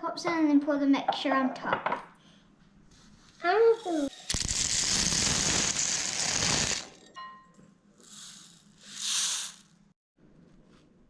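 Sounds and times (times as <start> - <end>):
cereal poured into a bowl: 4.0 - 6.9, 8.0 - 9.7.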